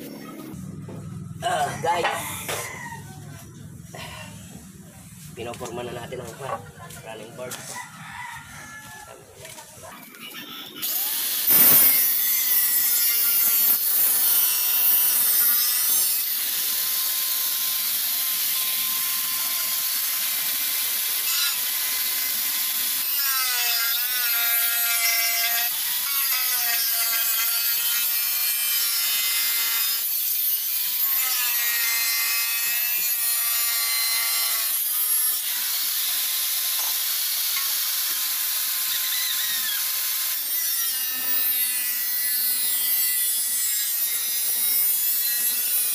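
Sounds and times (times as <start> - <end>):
power tool whining on sheet metal: 10.5 - 45.9.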